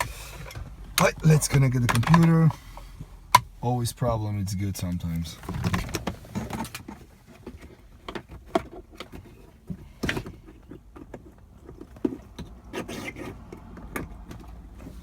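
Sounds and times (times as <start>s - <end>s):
clicks and knocks handling equipment: 0.0s - 3.5s, 4.9s - 15.0s
low steady rumble: 0.0s - 8.1s.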